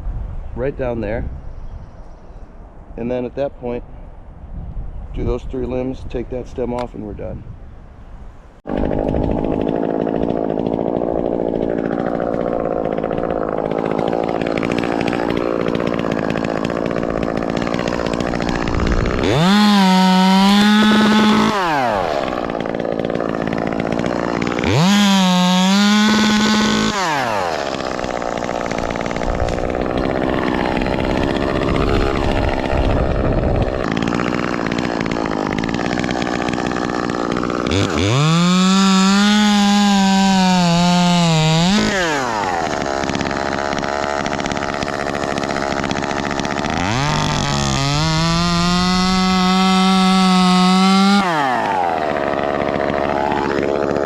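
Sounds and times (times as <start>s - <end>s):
chainsaw cutting wood: 8.6s - 54.0s.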